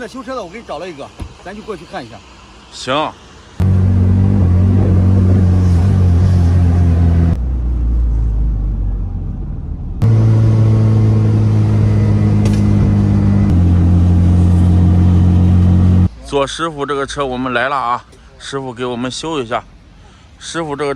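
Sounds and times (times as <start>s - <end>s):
low rumble: 3.6s - 16.1s.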